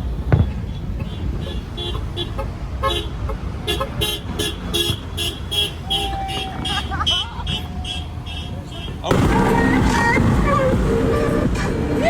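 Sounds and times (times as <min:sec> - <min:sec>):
vehicle horn tooting: 0:00.0 - 0:11.6
steady low rumble: 0:08.5 - 0:12.0.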